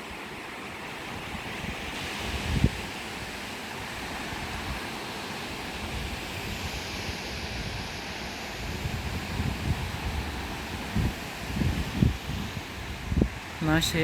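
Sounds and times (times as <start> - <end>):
surf washing: 0.0 - 14.0
wind buffeting microphone: 1.1 - 14.0.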